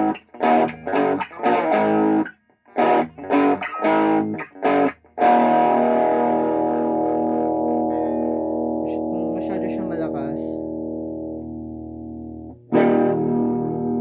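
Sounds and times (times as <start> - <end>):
overdriven electric guitar chords: 0.0 - 14.0.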